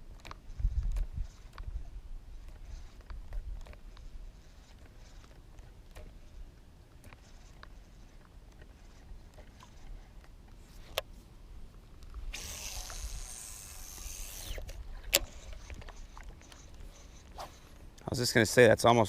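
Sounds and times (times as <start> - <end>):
fishing reel clicks: 12.3 - 17.4
fishing reel spool whirring: 12.3 - 17.8.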